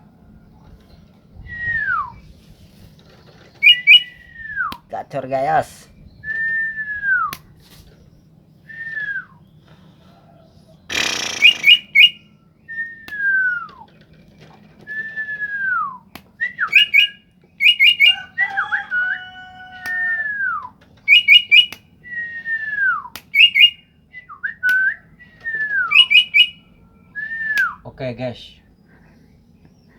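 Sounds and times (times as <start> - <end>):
high bird chirps: 3.6 - 4.3, 10.8 - 12.5, 16.7 - 20.2, 21.0 - 21.8, 23.3 - 23.8, 25.9 - 27.1
bird whistling: 3.6 - 4.7, 10.9 - 13.8, 14.9 - 27.8.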